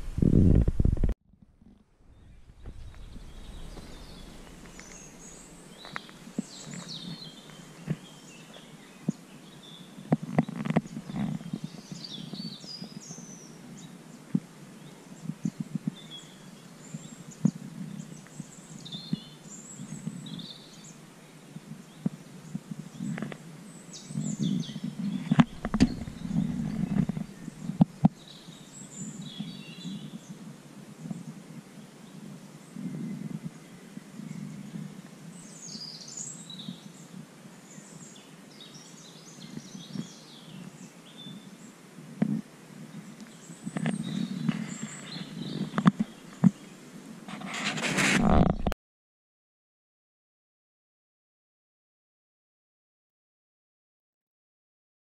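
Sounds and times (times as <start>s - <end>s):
low rumbling noise: 0.0s - 7.9s, 24.8s - 27.8s
small birds chirping: 2.0s - 48.6s
sharp knocks and clicks: 25.3s - 27.3s.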